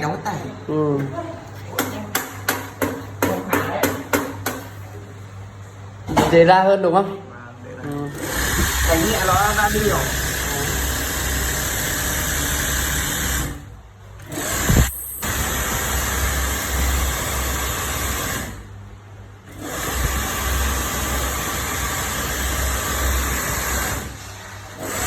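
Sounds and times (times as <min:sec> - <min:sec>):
sewing machine whirring: 0:07.9 - 0:18.7, 0:19.5 - 0:25.0.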